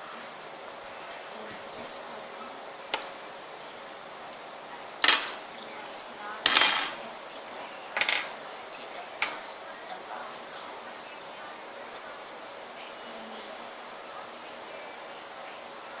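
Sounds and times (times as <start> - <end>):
tools clattering: 6.5 - 7.1.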